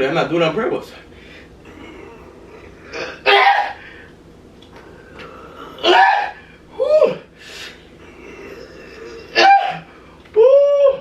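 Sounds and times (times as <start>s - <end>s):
man grunting and squealing: 1.6s - 3.8s, 5.2s - 7.3s, 8.0s - 11.0s.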